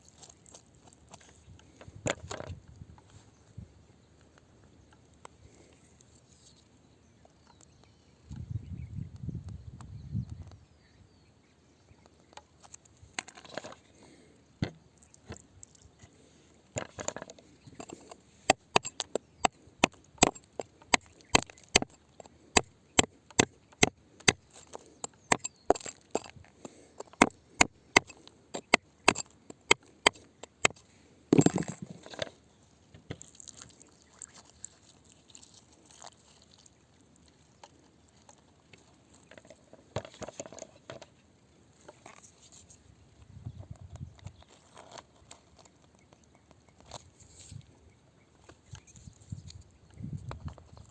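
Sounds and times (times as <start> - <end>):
hand tool striking rock: 17.8 - 32.2.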